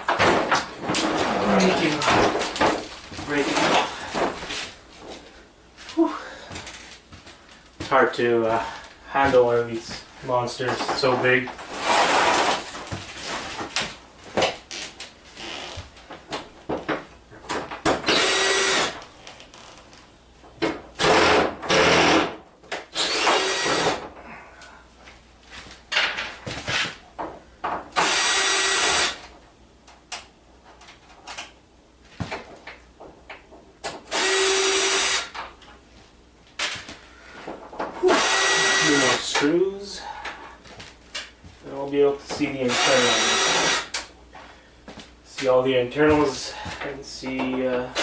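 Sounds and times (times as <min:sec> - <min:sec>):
power drill backing out screws: 0:18.0 - 0:19.0, 0:23.0 - 0:24.0, 0:28.0 - 0:29.2, 0:34.1 - 0:35.4, 0:38.1 - 0:39.3, 0:42.7 - 0:44.0.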